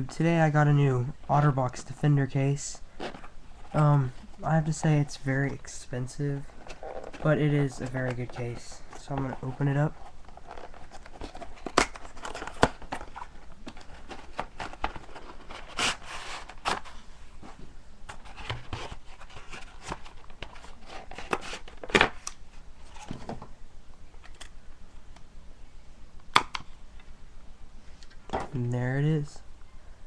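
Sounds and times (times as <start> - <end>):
packaging rustling and tearing: 6.4 - 17.0, 18.1 - 23.2.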